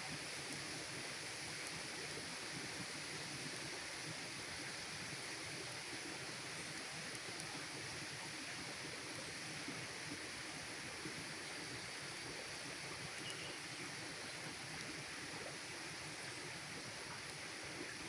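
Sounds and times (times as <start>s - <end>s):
campfire hissing: 0.0s - 18.0s
fire crackles: 0.1s - 18.0s.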